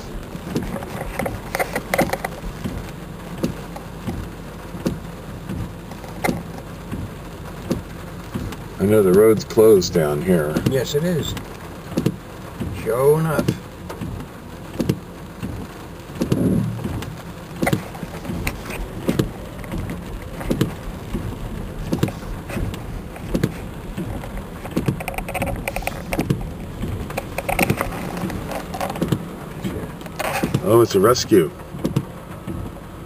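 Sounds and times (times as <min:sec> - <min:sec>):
heavy rain hissing: 0:00.0 - 0:33.0
vehicle running: 0:13.9 - 0:33.0
short knocks: 0:16.2 - 0:29.3.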